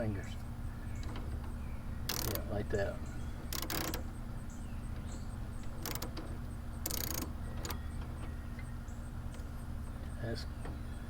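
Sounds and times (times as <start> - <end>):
ratchet wrench clicking: 2.1 - 2.5, 3.5 - 4.1, 5.7 - 7.8.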